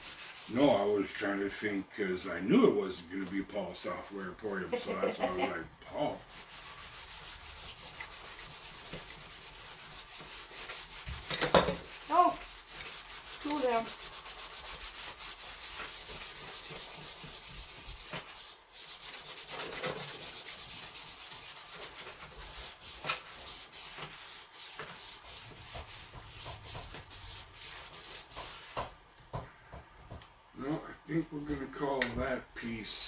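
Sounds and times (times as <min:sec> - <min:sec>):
hand sanding plastic: 0:00.0 - 0:01.0, 0:06.1 - 0:29.0.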